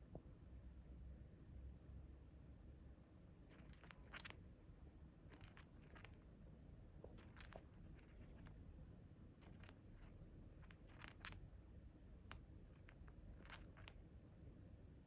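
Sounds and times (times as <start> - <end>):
low background hum: 0.0 - 15.0
bird grinding its beak: 3.5 - 4.3, 5.3 - 6.2, 7.2 - 8.6, 9.4 - 11.4, 12.8 - 14.0.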